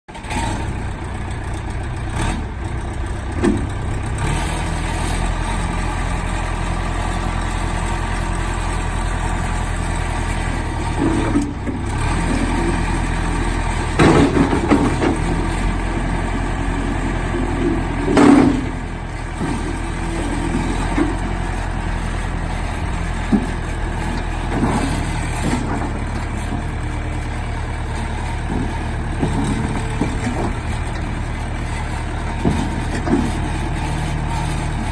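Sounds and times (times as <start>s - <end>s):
diesel engine running: 0.1s - 34.9s
metal knocks and clanks: 13.9s - 15.6s, 23.1s - 26.8s, 28.4s - 33.7s.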